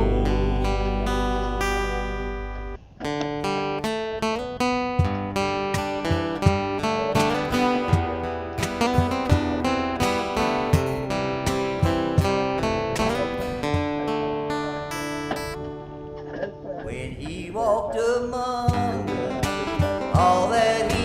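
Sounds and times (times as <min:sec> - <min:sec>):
plucked bass line: 0:00.0 - 0:04.3, 0:04.9 - 0:14.4, 0:18.7 - 0:21.0
acoustic guitar picking notes: 0:00.0 - 0:21.0.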